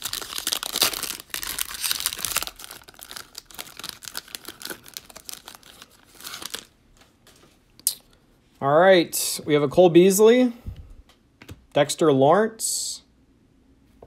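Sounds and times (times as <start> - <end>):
wrapper crinkling and tearing: 0.0 - 6.8.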